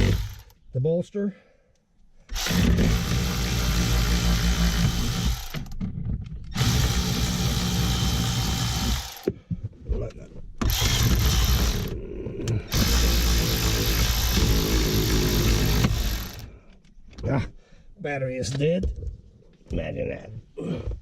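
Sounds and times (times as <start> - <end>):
power tool spinning bolts: 0.0 - 0.6, 2.3 - 5.8, 6.5 - 9.3, 10.6 - 12.0, 12.7 - 16.5.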